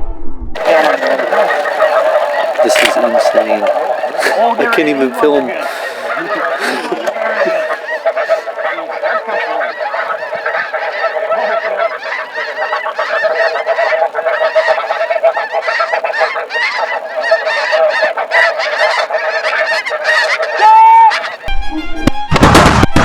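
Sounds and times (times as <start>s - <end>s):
flock of geese honking: 0.6s - 23.0s.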